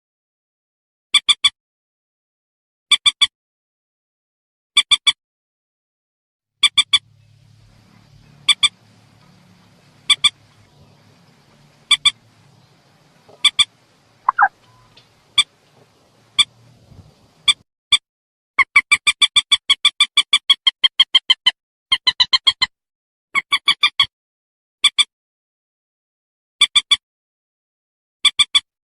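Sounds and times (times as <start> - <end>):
rail bird call: 6.6 - 17.6.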